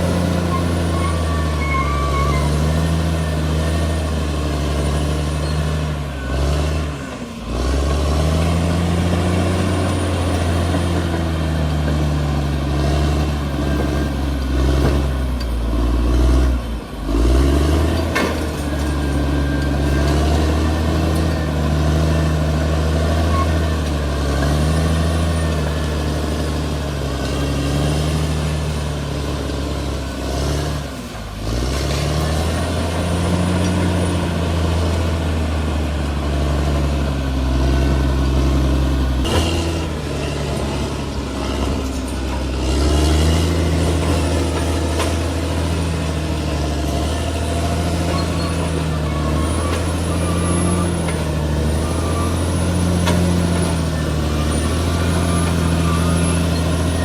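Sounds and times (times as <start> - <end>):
diesel engine running: 0.0 - 57.0
faint high squeaks: 0.1 - 4.1, 47.0 - 57.0.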